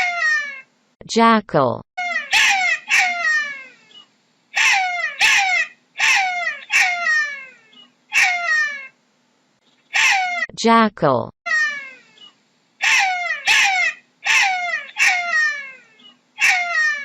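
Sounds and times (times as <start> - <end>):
jackal yelping: 0.0 - 0.7, 2.0 - 4.0, 4.6 - 9.0, 9.9 - 10.5, 11.5 - 17.0.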